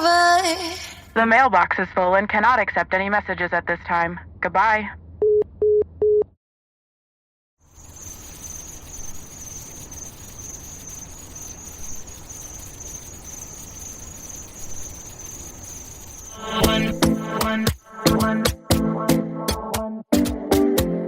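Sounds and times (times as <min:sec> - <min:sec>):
crickets chirring: 0:07.6 - 0:18.4.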